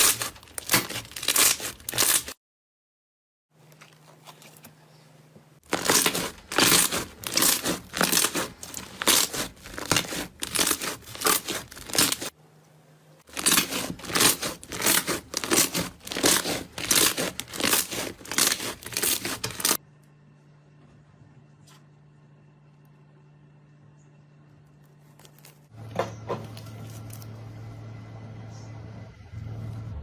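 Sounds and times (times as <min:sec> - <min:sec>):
slime squelching by hand: 0:00.0 - 0:02.4, 0:05.6 - 0:12.3, 0:13.3 - 0:19.8.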